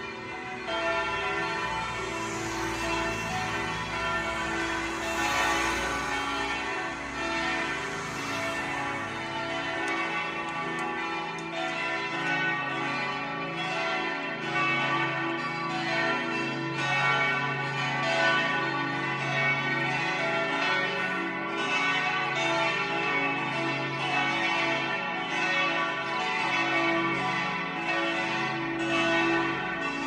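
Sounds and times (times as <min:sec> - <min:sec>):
church bells pealing: 0:00.0 - 0:30.0.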